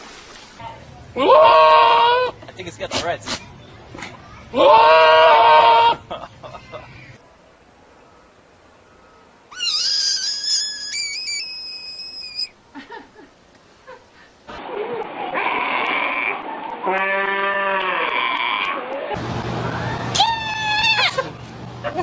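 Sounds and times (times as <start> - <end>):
goat screaming bleats: 1.2 - 2.4, 4.6 - 6.0, 15.3 - 19.0
high-pitched animal call: 9.5 - 12.5.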